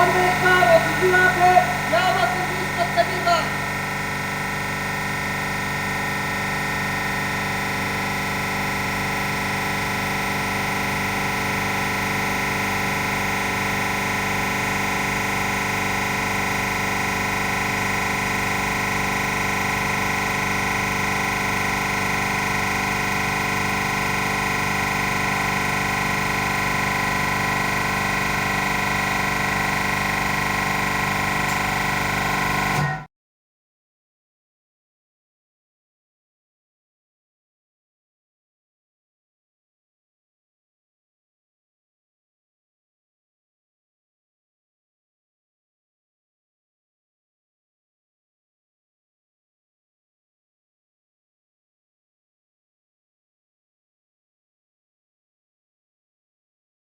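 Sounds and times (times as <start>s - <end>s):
refrigeration compressor humming: 0.0s - 7.6s.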